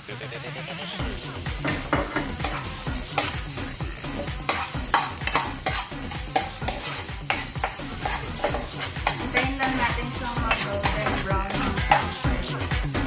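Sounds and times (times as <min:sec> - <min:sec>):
garlic sizzling in hot oil: 0:00.0 - 0:13.0
utensil scraping a wok: 0:01.0 - 0:13.0.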